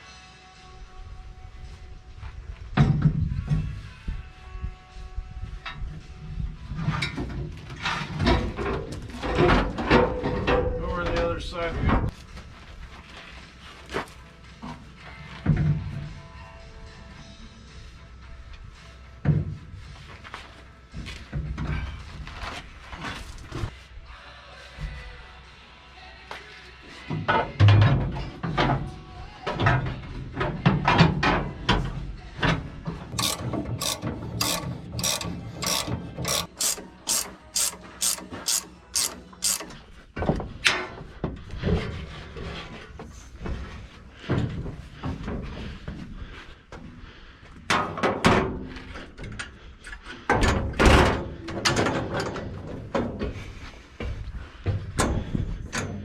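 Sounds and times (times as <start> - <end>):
metallic clanks of tools: 33.2 - 39.8
ratchet wrench clicking: 33.2 - 39.8.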